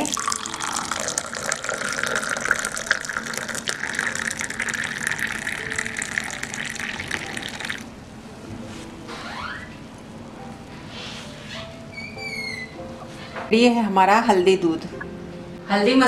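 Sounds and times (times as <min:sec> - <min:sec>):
milk pouring into a clay cup: 0:00.0 - 0:07.9.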